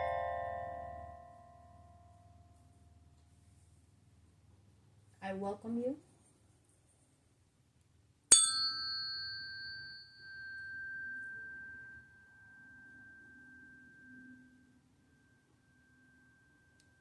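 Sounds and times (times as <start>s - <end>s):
metal chime ringing: 0.0s - 2.3s, 8.3s - 17.0s.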